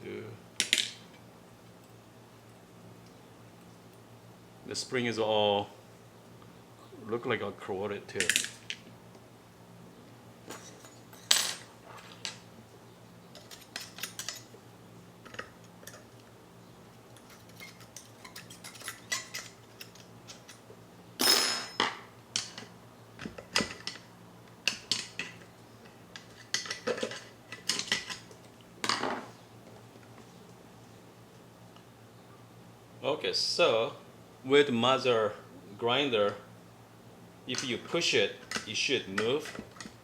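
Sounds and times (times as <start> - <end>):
metal parts clinking: 13.4 - 14.5, 17.2 - 20.6.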